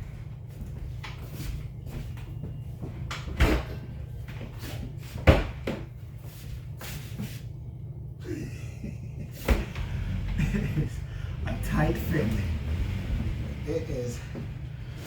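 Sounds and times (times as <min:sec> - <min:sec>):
steady low hum: 0:00.0 - 0:15.0
refrigerator knocking and bumping: 0:03.3 - 0:03.9, 0:05.2 - 0:05.9.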